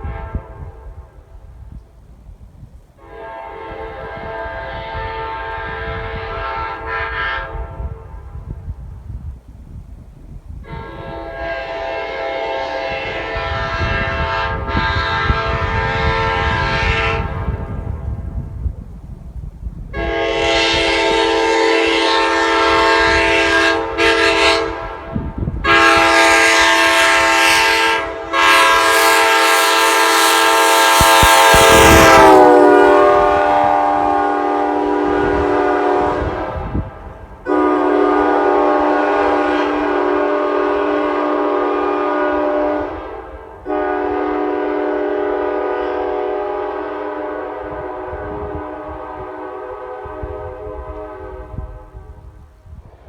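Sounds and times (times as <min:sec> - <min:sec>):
train horn chord blasts: 0:00.0 - 0:01.3, 0:03.0 - 0:08.6, 0:10.6 - 0:18.5, 0:19.9 - 0:52.4.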